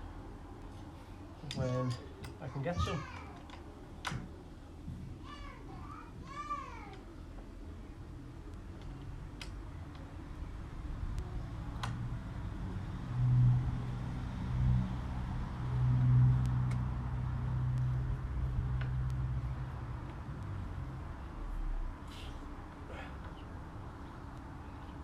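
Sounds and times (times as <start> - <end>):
low motor hum: 10.1 - 22.6.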